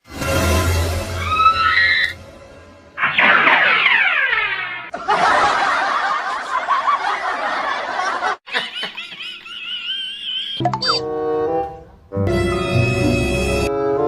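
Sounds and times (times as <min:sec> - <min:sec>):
snickering laughter: 0:04.9 - 0:10.6.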